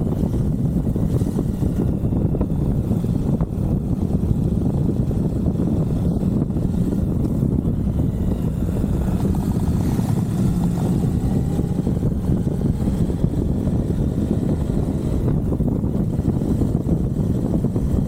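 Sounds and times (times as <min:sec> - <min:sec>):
motorcycle engine rumbling: 0:00.0 - 0:18.0.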